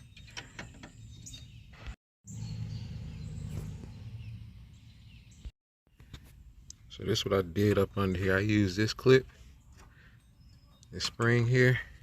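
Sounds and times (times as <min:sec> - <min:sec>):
faint birds chirping: 0:00.0 - 0:12.0
light clicks of metal parts: 0:09.2 - 0:11.9.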